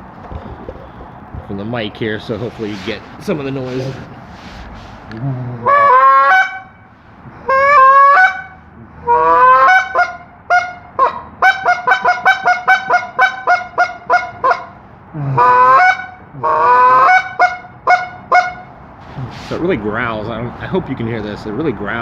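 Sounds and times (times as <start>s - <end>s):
goose call honks: 5.5s - 6.8s, 7.4s - 18.7s
goose call clucks: 5.6s - 6.8s, 7.4s - 18.7s.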